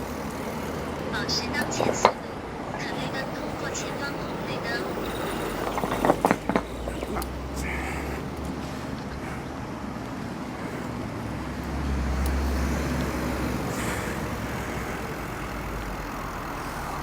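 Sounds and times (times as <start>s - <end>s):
road traffic rumble: 0.0s - 17.0s
motor vehicle passing close: 4.1s - 17.0s.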